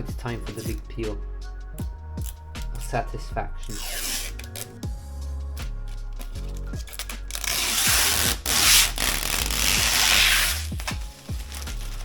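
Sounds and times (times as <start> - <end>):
background music with steady beat: 0.0 - 12.0
plastic film being peeled: 3.6 - 4.9, 5.6 - 12.0.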